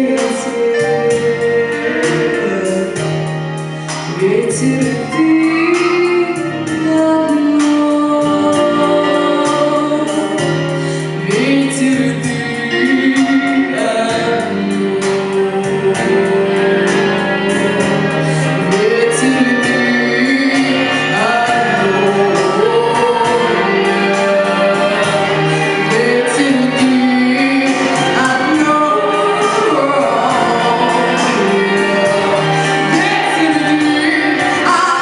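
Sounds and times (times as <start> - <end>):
person singing: 0.0 - 35.0
pop instrumental backing: 0.0 - 35.0
steady drum beat: 10.0 - 35.0.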